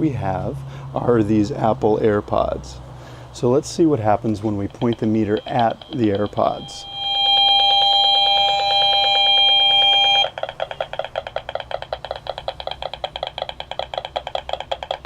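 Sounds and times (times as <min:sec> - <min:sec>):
meter steady high tone: 0:03.8 - 0:11.1.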